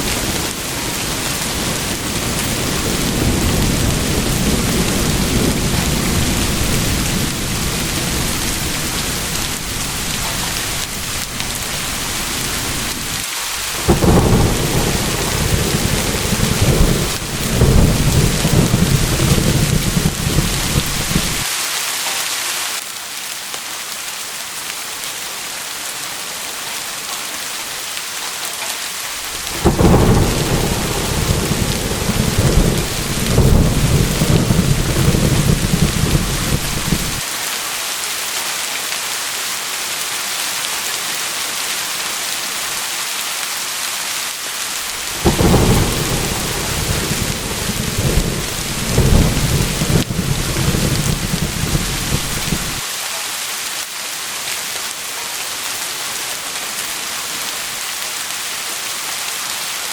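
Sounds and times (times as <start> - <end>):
thunder cracks: 0.0 - 21.4, 29.2 - 37.2, 44.8 - 52.8
thunder rumbling: 0.0 - 21.4, 29.1 - 37.2, 44.8 - 52.8
heavy rain: 0.0 - 59.9.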